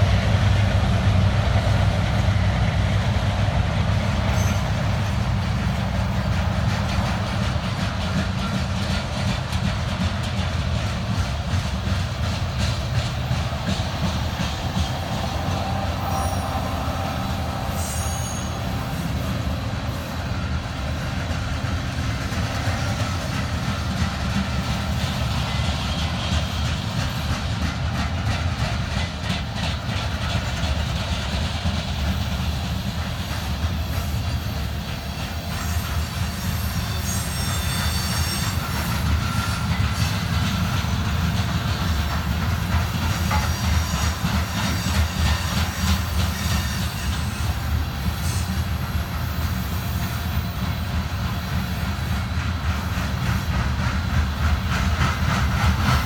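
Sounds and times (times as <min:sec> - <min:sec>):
train wheels rumbling on rail: 0:00.0 - 0:56.0
wheel squeals: 0:04.2 - 0:05.2, 0:12.2 - 0:20.2, 0:32.0 - 0:53.9.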